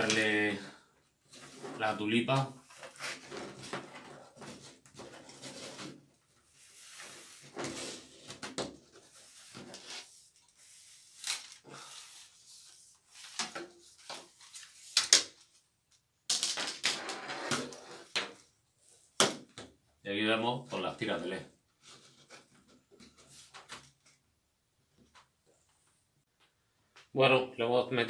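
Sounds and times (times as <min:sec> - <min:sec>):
plastic cover scraping: 0:01.3 - 0:10.1, 0:16.8 - 0:18.2.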